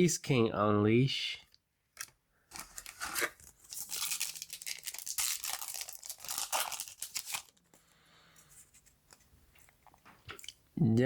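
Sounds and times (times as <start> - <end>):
foil wrapper tearing and crinkling: 2.6 - 7.6.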